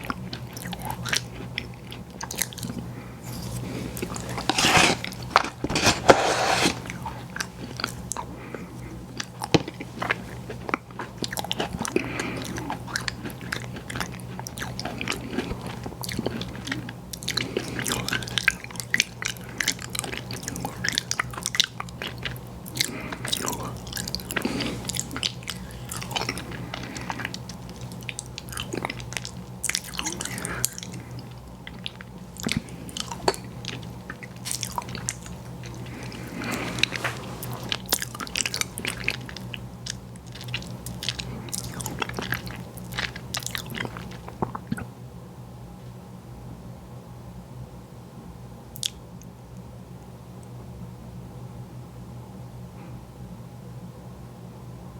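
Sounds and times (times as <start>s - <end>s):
wet chewing: 0.0s - 44.9s
steady low hum: 0.0s - 54.9s
crunching bites: 2.3s - 8.0s
mouth clicks and smacks: 48.7s - 49.0s.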